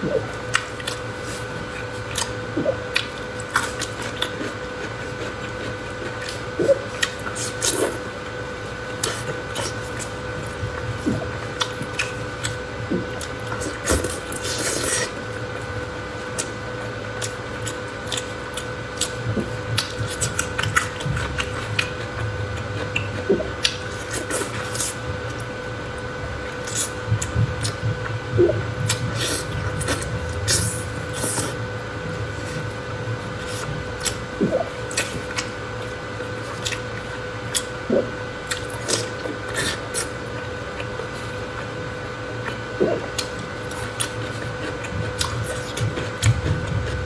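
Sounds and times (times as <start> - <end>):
wet chewing: 16.3 - 41.7, 42.4 - 47.0.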